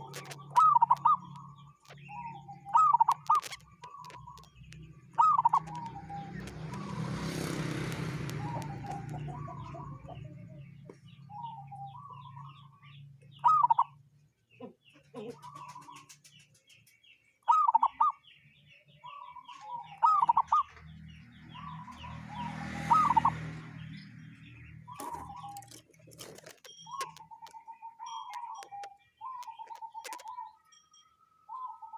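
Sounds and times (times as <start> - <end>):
dove cooing: 0.0 - 4.5, 5.1 - 12.5, 13.4 - 13.9, 14.6 - 16.0, 17.5 - 18.2, 19.1 - 20.8, 21.6 - 23.5
faint high bird chirps: 0.0 - 7.1, 8.3 - 31.9.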